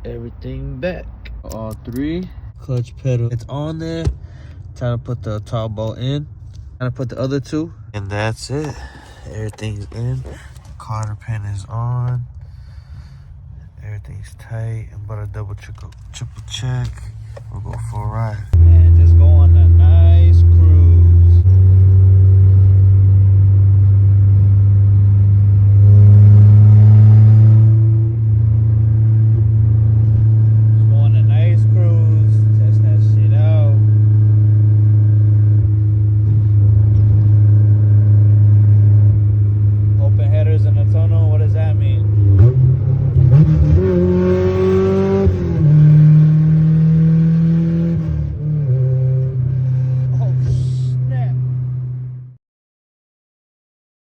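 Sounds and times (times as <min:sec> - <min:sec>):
car engine running: 0:00.0 - 0:52.3.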